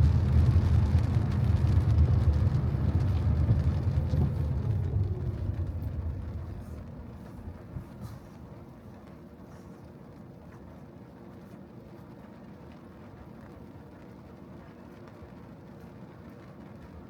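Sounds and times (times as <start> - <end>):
car driving on wet road: 0.0 - 8.0.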